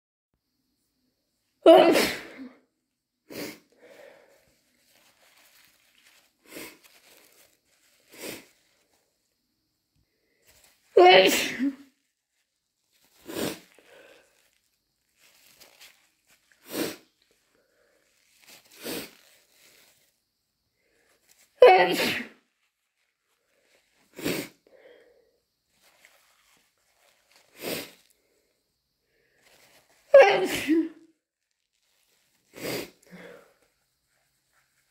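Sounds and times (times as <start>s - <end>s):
sniffing through stuffy nose: 3.3s - 8.9s, 13.0s - 14.6s, 15.2s - 20.1s, 23.6s - 25.1s, 27.3s - 28.4s, 32.4s - 34.2s
faint breathing: 3.3s - 9.0s, 13.0s - 15.8s, 16.6s - 19.9s, 23.3s - 26.3s, 32.5s - 34.6s.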